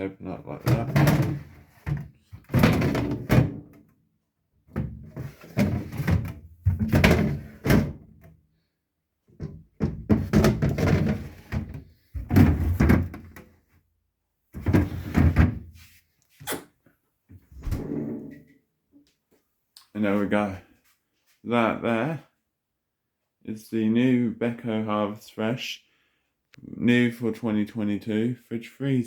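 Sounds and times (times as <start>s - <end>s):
drawers closing with thunks: 0.6s - 3.8s, 4.7s - 8.2s, 9.4s - 13.4s, 14.6s - 15.7s, 17.5s - 18.5s.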